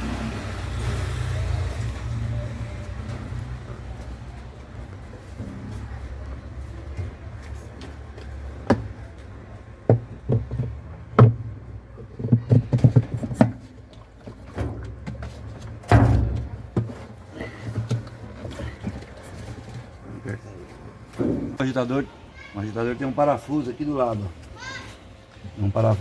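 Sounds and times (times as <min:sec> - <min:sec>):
knocks and clatter of agitator: 0:09.9 - 0:20.0
loud thump: 0:15.9 - 0:16.9, 0:21.2 - 0:21.6.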